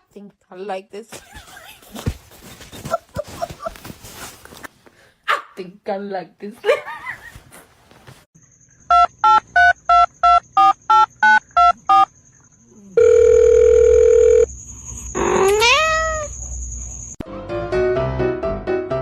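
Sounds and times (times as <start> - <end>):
steady telephone beep: 13.0 - 14.5.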